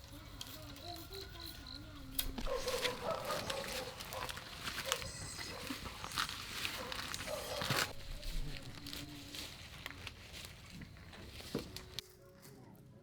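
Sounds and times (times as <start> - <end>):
animal wavering calls: 2.3 - 9.4.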